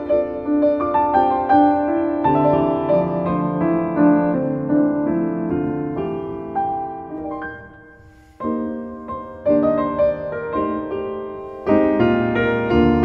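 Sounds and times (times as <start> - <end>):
gentle piano music: 0.0 - 13.0.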